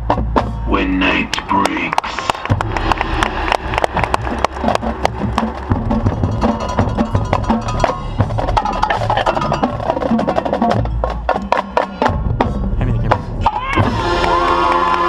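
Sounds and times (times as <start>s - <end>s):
rapid drum strikes: 2.4s - 14.0s
sustained band chords: 2.4s - 15.0s.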